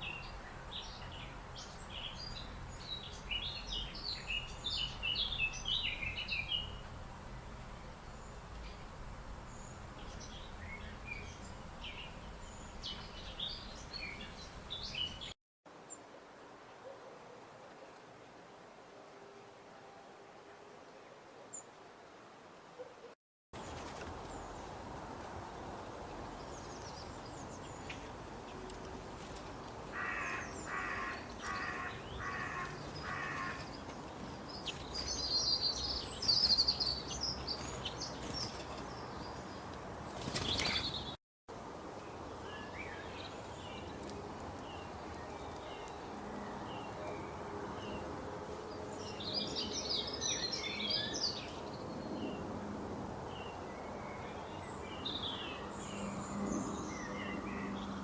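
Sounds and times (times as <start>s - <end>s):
songbirds chirping: 0.0s - 16.1s, 23.6s - 58.0s
crow cawing: 29.9s - 33.7s.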